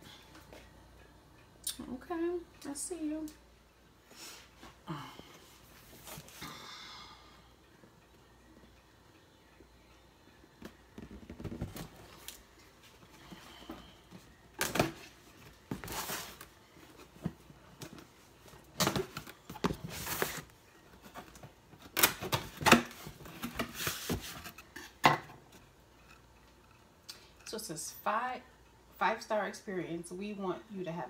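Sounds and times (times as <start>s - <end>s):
cardboard and plastic rustling: 14.7s - 24.6s.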